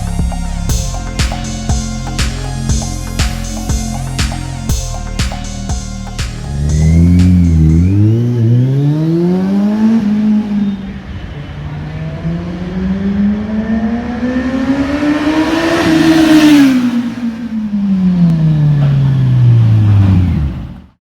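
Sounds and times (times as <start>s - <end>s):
motorbike engine revving past: 6.5s - 10.9s, 11.8s - 20.8s.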